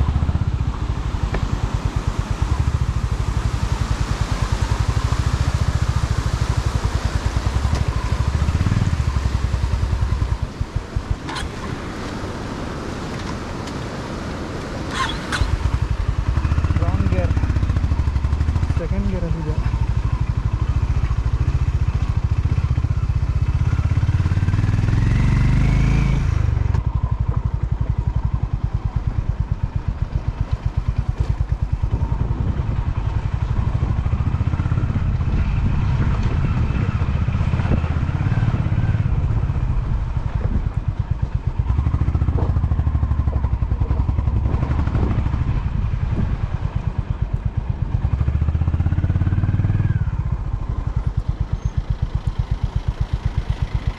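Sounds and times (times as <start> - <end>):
motorcycle engine revving: 0.0 - 12.4, 14.8 - 53.9
motorcycle rattling: 0.0 - 53.9.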